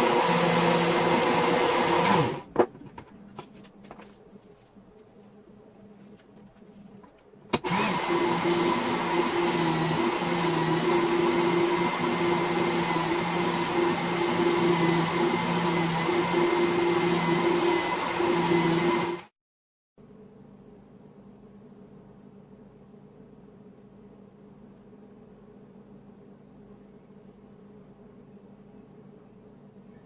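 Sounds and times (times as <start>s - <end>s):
belt grinder humming: 0.0s - 2.4s.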